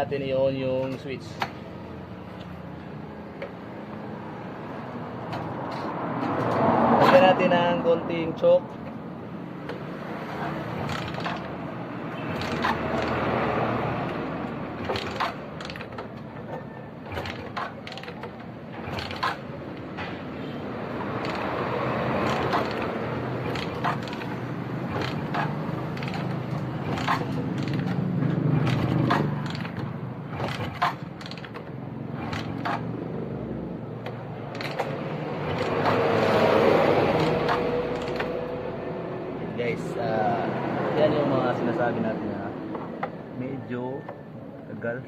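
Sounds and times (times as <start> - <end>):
sharp mechanical clicks: 9.6 - 20.1, 21.0 - 33.1, 33.9 - 38.5
motorcycle engine starting: 9.6 - 38.6.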